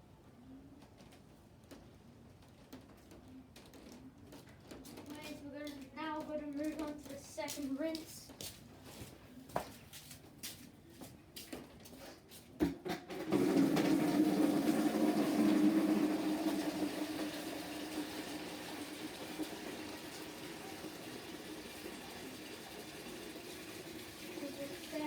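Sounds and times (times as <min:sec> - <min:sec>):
water rushing into tub: 0:12.9 - 0:25.0.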